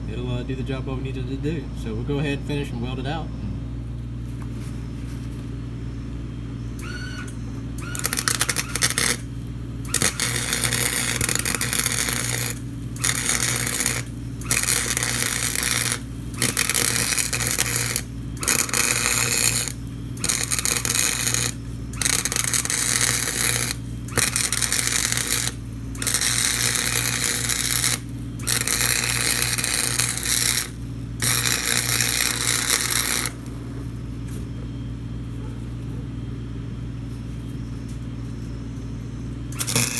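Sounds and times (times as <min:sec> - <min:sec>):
steady low hum: 0:00.0 - 0:39.9
crackling hissing arc welding: 0:06.8 - 0:34.4, 0:39.5 - 0:39.9.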